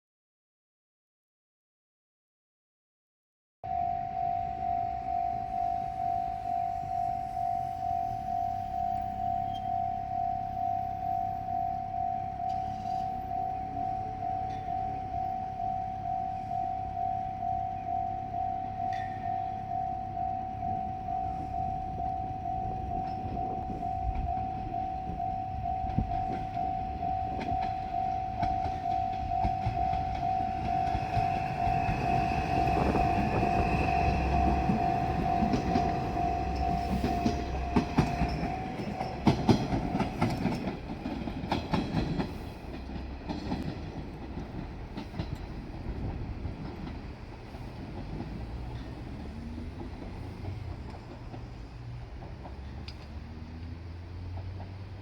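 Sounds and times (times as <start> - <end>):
level crossing bell dinging: 3.7 - 40.6
diesel railcar rumbling: 3.7 - 55.0
wheels clacking over rail joints: 21.6 - 55.0.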